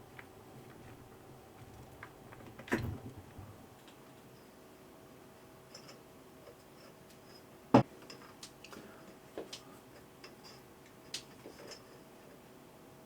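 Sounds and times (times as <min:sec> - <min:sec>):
faint steady hum: 0:00.0 - 0:06.9.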